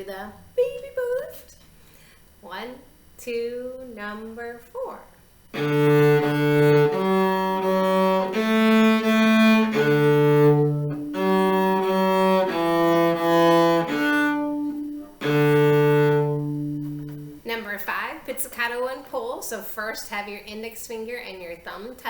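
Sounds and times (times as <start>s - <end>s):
bowed cello long notes: 5.6s - 17.4s.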